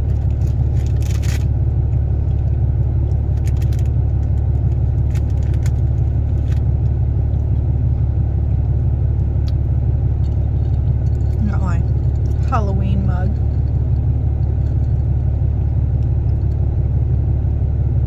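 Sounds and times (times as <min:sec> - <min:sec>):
crunching cookie bites: 0:00.0 - 0:12.5
low rumble: 0:00.0 - 0:18.0.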